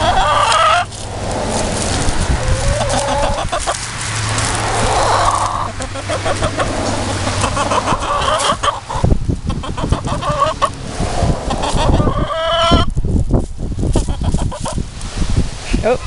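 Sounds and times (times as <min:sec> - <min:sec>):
chicken clucking: 0:00.0 - 0:00.9, 0:02.3 - 0:03.8, 0:04.4 - 0:10.8, 0:11.5 - 0:12.9, 0:14.0 - 0:14.8.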